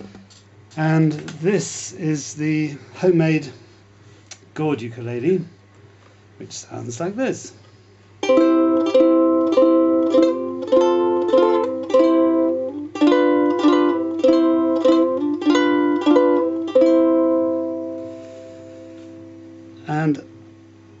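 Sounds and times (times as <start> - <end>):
ukulele strummed chords: 8.2 - 20.8.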